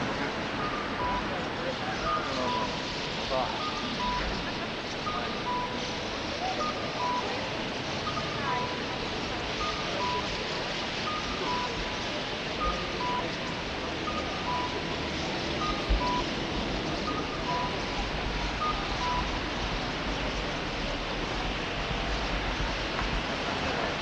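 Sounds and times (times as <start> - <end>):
steady dense hiss: 0.0 - 24.0.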